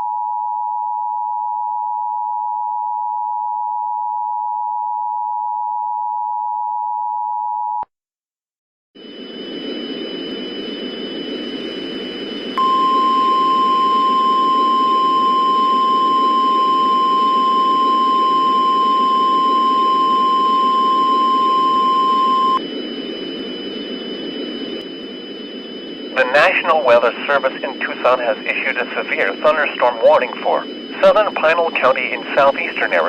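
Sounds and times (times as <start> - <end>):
faint thin high whines: 9.0 - 33.0
high steady alarm beep: 10.3 - 33.0.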